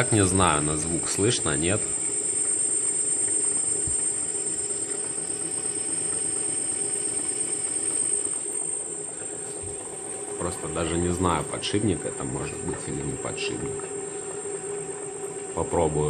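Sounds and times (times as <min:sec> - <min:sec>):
motor wheel whine: 0:00.0 - 0:16.0.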